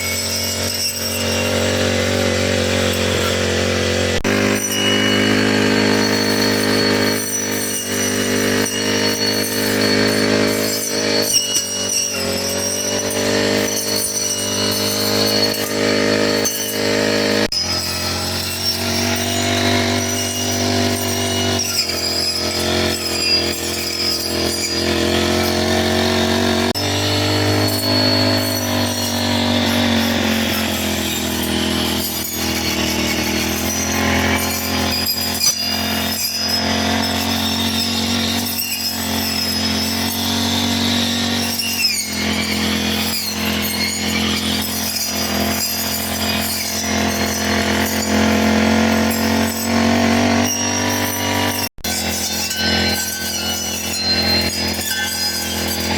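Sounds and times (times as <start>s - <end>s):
brush cutter engine cutting grass: 0.0s - 55.9s.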